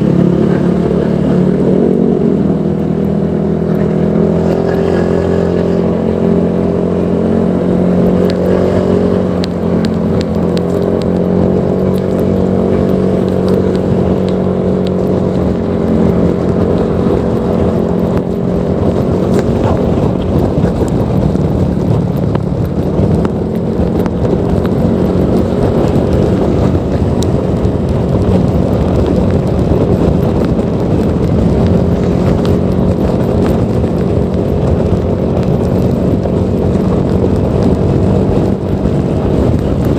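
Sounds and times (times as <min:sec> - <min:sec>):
scooter engine running: 0:00.0 - 0:39.9.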